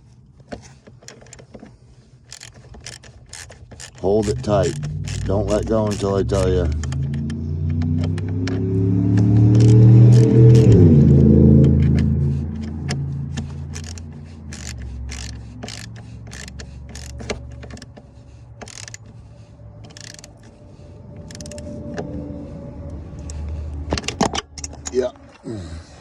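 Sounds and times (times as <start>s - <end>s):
metallic clicks and rattles: 0.5s - 22.2s, 23.2s - 25.0s
motor whirring down: 3.3s - 12.0s.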